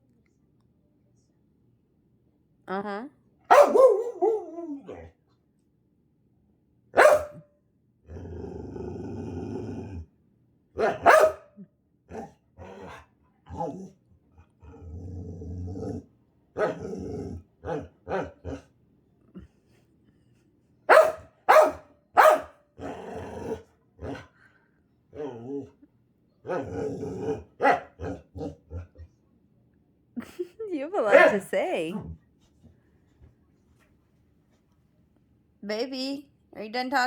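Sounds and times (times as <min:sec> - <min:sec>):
dog barking: 0:03.5 - 0:04.8, 0:07.0 - 0:07.5, 0:10.8 - 0:11.6, 0:16.6 - 0:16.8, 0:17.6 - 0:18.6, 0:20.9 - 0:22.6, 0:27.6 - 0:28.6, 0:31.1 - 0:31.4
dog grumbling growls: 0:08.0 - 0:10.1, 0:12.1 - 0:18.7, 0:22.8 - 0:24.4, 0:25.1 - 0:29.1.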